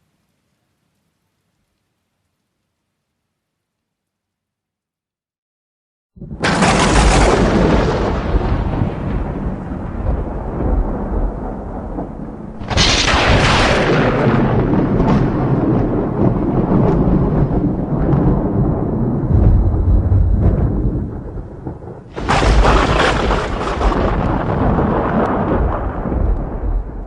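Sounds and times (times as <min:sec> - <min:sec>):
thunder crack and rumble: 0:06.2 - 0:27.0.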